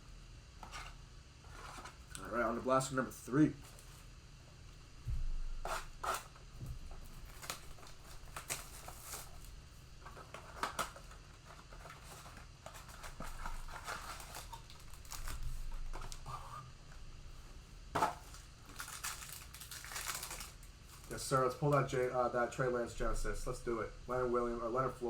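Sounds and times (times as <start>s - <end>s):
crinkling plastic wrap and foil: 6.9s - 16.4s, 18.0s - 21.8s.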